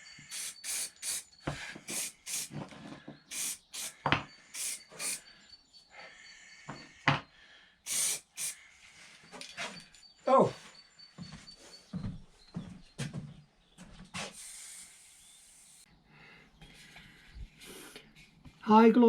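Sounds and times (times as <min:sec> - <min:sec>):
sharp chirps: 0:00.0 - 0:02.6, 0:03.2 - 0:07.1, 0:07.9 - 0:11.9
aerosol spray can hissing: 0:00.2 - 0:02.6, 0:03.3 - 0:04.0, 0:04.6 - 0:05.2, 0:07.9 - 0:08.6, 0:14.2 - 0:15.9.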